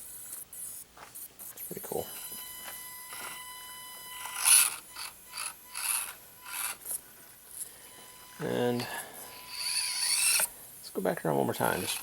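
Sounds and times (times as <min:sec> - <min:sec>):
toy car electric motor whining: 0:02.2 - 0:10.6, 0:11.6 - 0:12.0.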